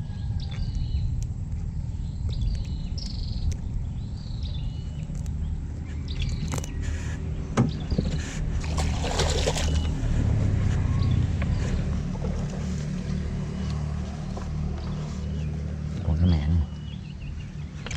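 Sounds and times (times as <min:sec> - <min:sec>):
bird chirping: 0:00.0 - 0:08.2, 0:14.8 - 0:17.9
steady low rumble: 0:00.0 - 0:17.9.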